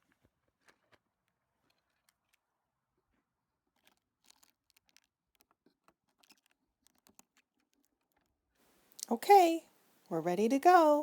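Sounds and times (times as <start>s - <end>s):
faint clicks and crackles: 3.7s - 8.2s.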